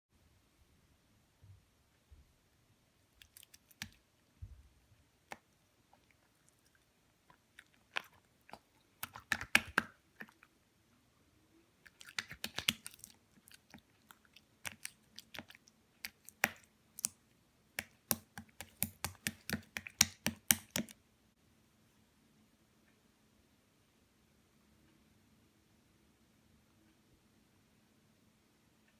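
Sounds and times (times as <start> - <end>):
slime sticky clicks and pops: 9.0 - 10.0, 12.1 - 13.0, 17.8 - 20.9.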